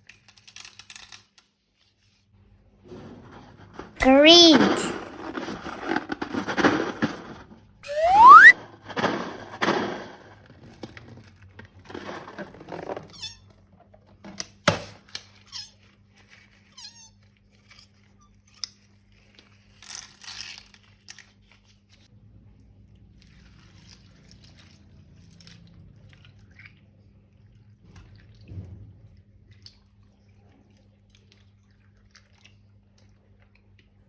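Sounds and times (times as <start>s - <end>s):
balloon squeaking: 7.9s - 8.5s.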